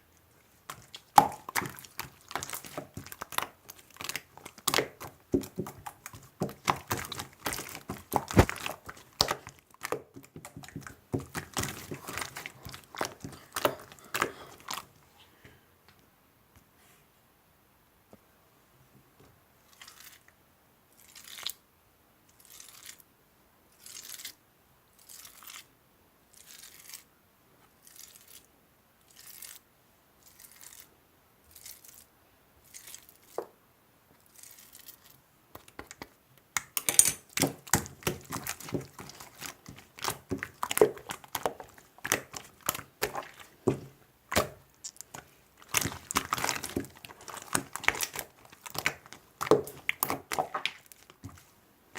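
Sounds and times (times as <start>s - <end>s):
slime squishing: 0.3s - 15.1s, 34.2s - 51.6s
crackling and popping clicks: 0.7s - 14.4s.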